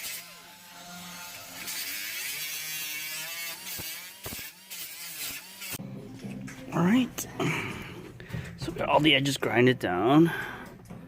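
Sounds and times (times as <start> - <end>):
power grinder grinding metal: 0.0 - 5.8.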